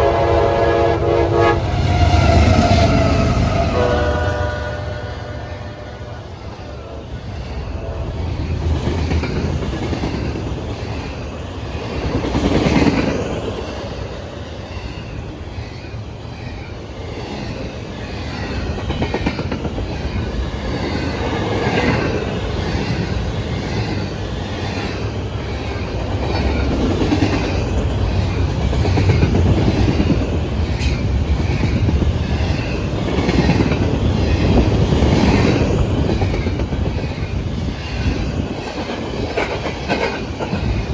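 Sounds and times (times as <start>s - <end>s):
freight train rolling past: 0.0s - 40.9s
wheels clickety-clack: 8.4s - 13.8s, 16.4s - 40.9s.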